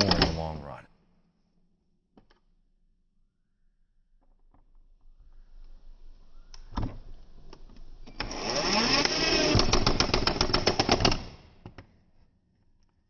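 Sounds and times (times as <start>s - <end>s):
impact driver motor spinning: 7.9s - 11.5s
impact driver hammer clattering: 8.1s - 11.5s.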